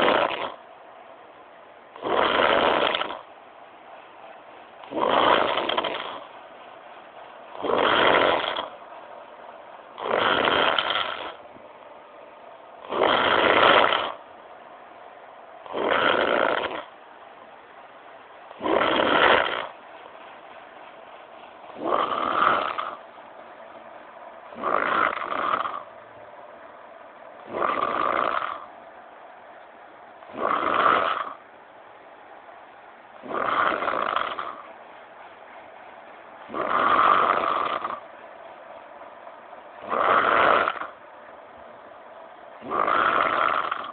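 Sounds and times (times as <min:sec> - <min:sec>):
person snoring: 0:00.0 - 0:00.6, 0:02.0 - 0:03.2, 0:04.9 - 0:06.3, 0:07.6 - 0:08.8, 0:10.0 - 0:11.4, 0:12.8 - 0:14.2, 0:15.7 - 0:16.9, 0:18.6 - 0:19.7, 0:21.8 - 0:23.0, 0:24.5 - 0:25.9, 0:27.4 - 0:28.7, 0:30.3 - 0:31.4, 0:33.2 - 0:34.7, 0:36.5 - 0:38.0, 0:39.8 - 0:41.0, 0:42.6 - 0:43.9.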